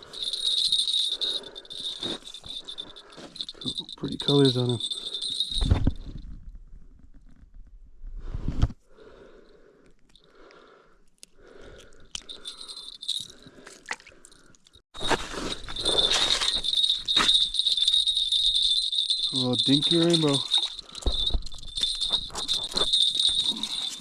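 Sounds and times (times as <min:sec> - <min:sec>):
jangling: 0:00.0 - 0:06.2, 0:12.0 - 0:24.0.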